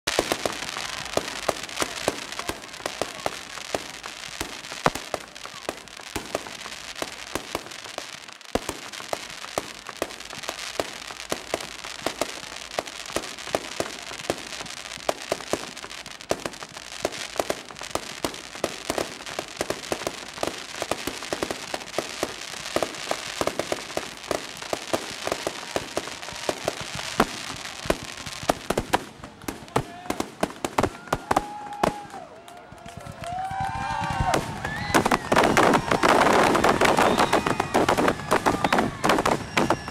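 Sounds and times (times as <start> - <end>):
fireworks crackling and popping: 0.0 - 39.9.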